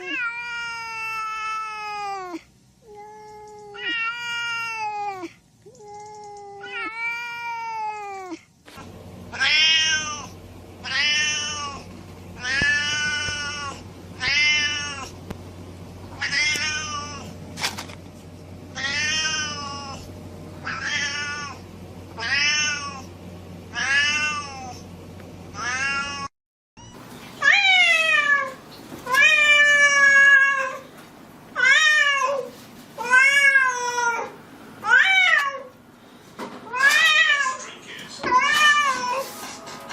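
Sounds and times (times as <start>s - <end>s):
cat meowing: 0.0s - 8.4s, 9.3s - 15.1s, 16.2s - 17.3s, 18.8s - 20.0s, 20.6s - 21.6s
low steady hum: 0.0s - 31.6s.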